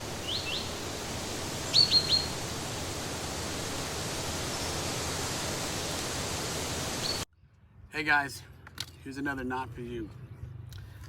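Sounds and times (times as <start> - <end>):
outdoor hiss: 0.0 - 7.3
small bird chirping: 0.2 - 0.8, 1.6 - 2.5, 7.0 - 7.3.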